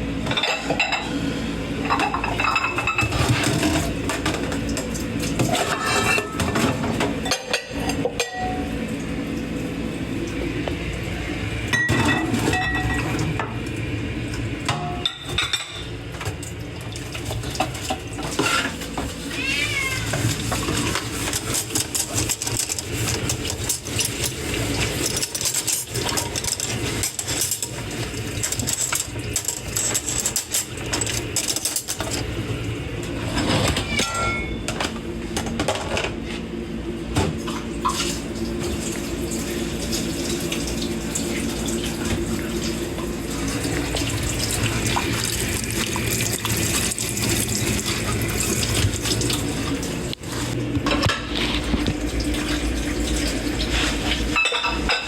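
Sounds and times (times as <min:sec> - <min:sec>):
dishes clinking in sink: 0:00.2 - 0:01.2, 0:01.8 - 0:08.7, 0:11.7 - 0:13.6, 0:14.6 - 0:16.5, 0:33.3 - 0:36.2, 0:50.8 - 0:52.6, 0:53.2 - 0:55.0
water washing noise: 0:16.1 - 0:33.3, 0:37.4 - 0:54.4
cat meowing faintly: 0:19.3 - 0:20.3.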